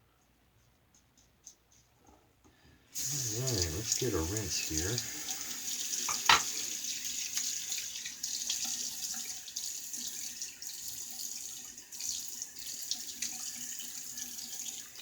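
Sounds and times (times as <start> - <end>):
water splashing: 3.0 - 7.8
tap water running into sink: 3.0 - 15.0.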